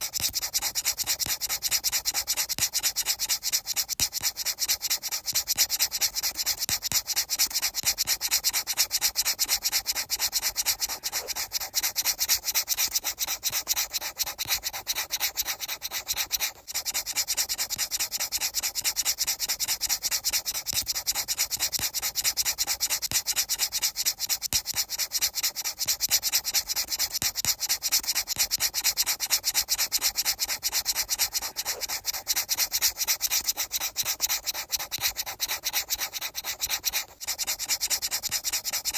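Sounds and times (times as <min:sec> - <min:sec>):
hissy rubbing strokes: 0:07.6 - 0:16.7, 0:28.2 - 0:38.9.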